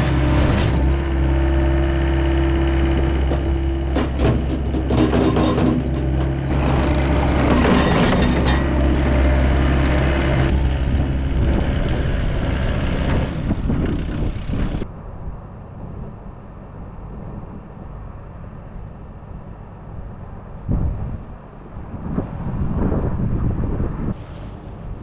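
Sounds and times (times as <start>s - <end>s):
truck engine running: 0.0s - 14.9s.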